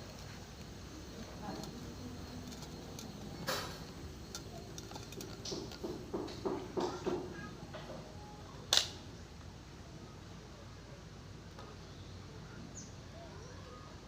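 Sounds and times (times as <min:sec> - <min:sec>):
objects being handled clicking: 0:00.1 - 0:07.2
sharp loud click: 0:08.7 - 0:09.0.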